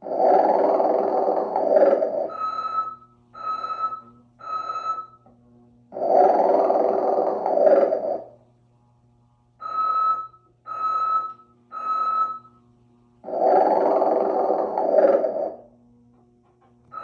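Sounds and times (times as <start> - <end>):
toy snoring: 0.0 - 2.9, 5.9 - 8.4, 13.2 - 15.8.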